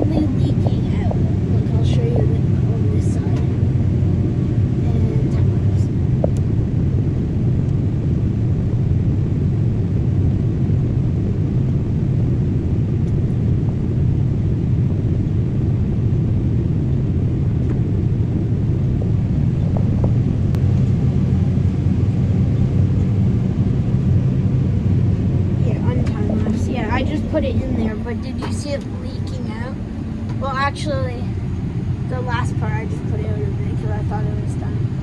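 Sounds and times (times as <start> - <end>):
combine harvester running: 11.1 - 35.0.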